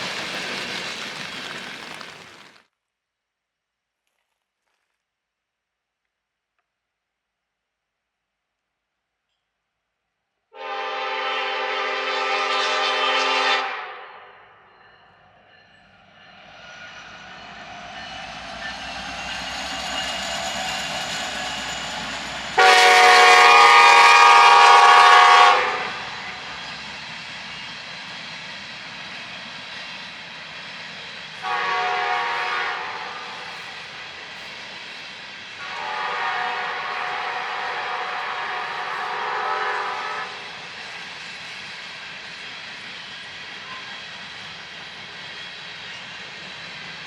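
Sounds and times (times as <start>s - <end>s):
train rumbling past: 0.0s - 2.6s, 10.6s - 47.0s
locomotive air horn: 10.5s - 14.3s, 22.6s - 26.4s, 31.4s - 33.4s, 35.6s - 40.4s.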